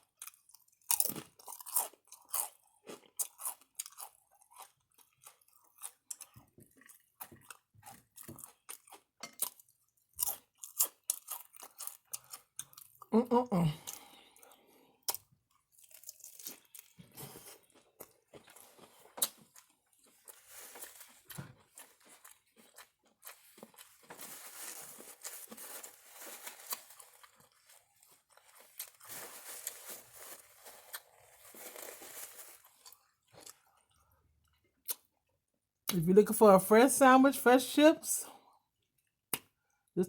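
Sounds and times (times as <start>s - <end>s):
person chewing crunchy food: 0.0s - 13.1s, 13.7s - 35.3s.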